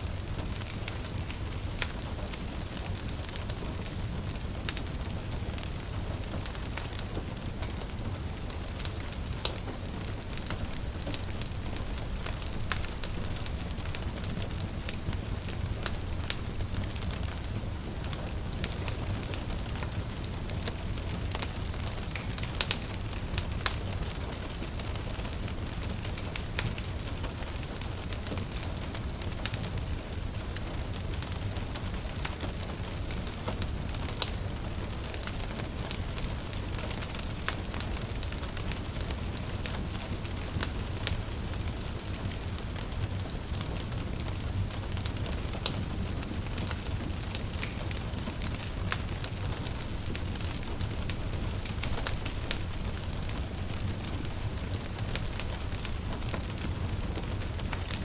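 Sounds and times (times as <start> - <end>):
gentle rain hiss: 0.0 - 58.0
wood fire crackling and popping: 0.0 - 58.0.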